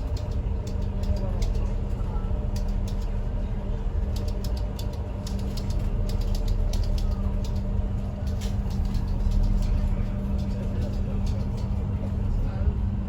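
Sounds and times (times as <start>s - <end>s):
boat engines rumbling: 0.0s - 13.0s
boat fittings clicking and creaking: 4.1s - 11.7s.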